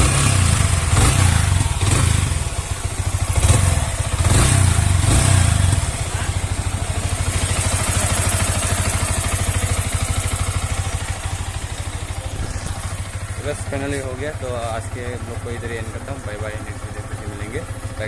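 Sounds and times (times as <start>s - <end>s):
engine ticking: 0.0s - 18.0s
motorcycle engine revving and idling: 0.0s - 18.0s.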